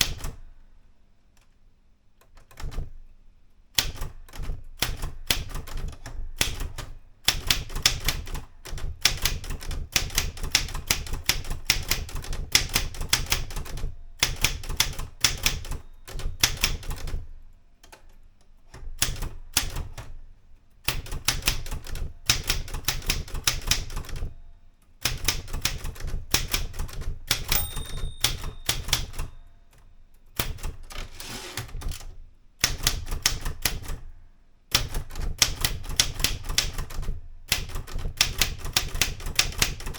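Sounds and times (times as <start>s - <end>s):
typewriter key strikes: 0.0s - 0.4s, 3.8s - 17.2s, 20.9s - 24.3s, 25.1s - 34.0s, 34.7s - 39.9s
typewriter bell ringing: 27.3s - 29.5s.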